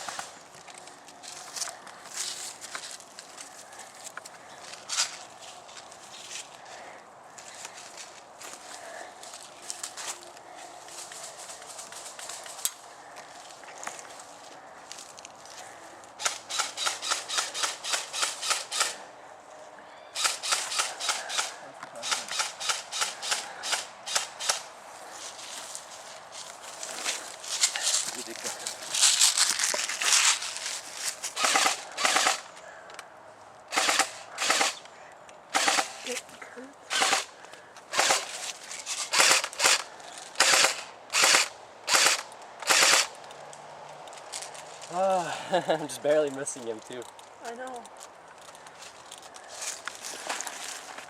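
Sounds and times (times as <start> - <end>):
airsoft rifle shots: 31.4 - 32.5, 33.7 - 34.8, 35.5 - 36.1, 36.9 - 37.3, 37.9 - 38.3, 39.1 - 43.1.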